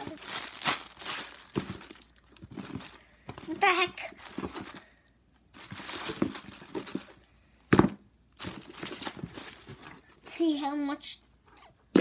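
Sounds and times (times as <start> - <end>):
packaging crinkling: 0.0 - 4.9, 5.5 - 7.3, 8.4 - 10.0.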